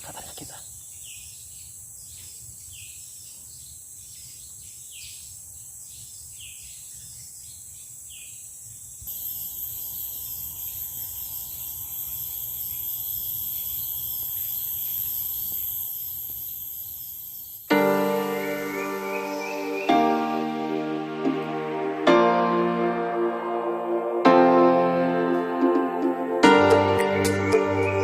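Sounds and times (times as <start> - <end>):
insects buzzing: 8.8 - 23.1, 25.6 - 28.0.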